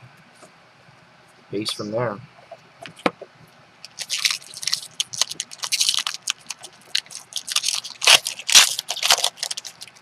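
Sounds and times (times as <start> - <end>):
foil pack crinkling and rustling: 3.8 - 10.0.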